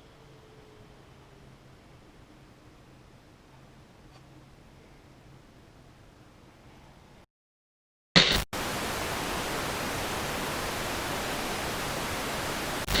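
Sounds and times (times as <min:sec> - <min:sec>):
static hiss: 0:08.2 - 0:13.0.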